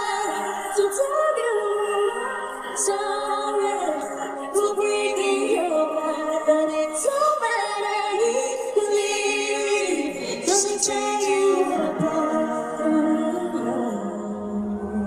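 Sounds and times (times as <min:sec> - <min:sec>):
woman singing: 0:00.0 - 0:15.0.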